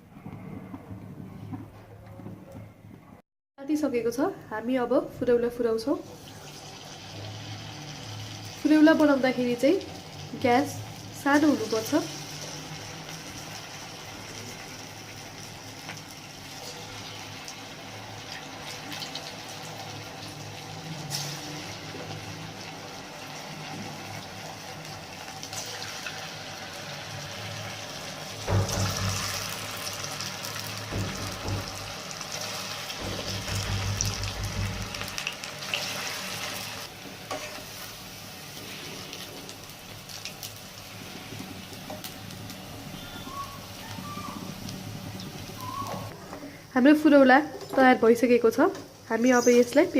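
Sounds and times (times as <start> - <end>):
fritters sizzling in hot oil: 6.1 - 47.3
low knocks: 30.8 - 31.9.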